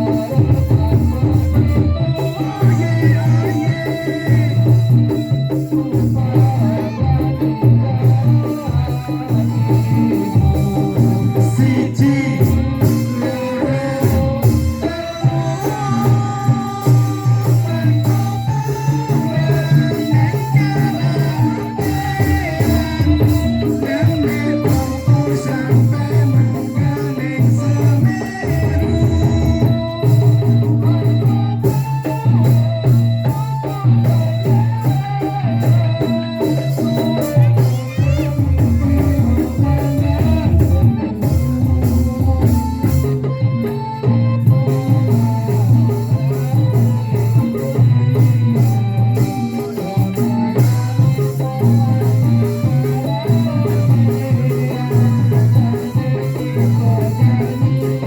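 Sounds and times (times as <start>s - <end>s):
live band playing: 0.0s - 58.0s
shaken percussion: 0.0s - 58.0s
woman singing: 36.0s - 41.0s.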